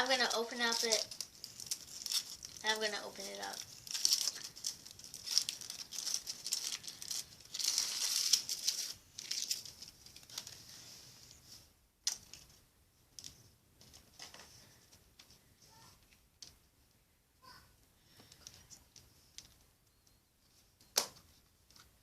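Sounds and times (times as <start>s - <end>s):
foil wrapper crinkling and tearing: 0.0s - 10.6s.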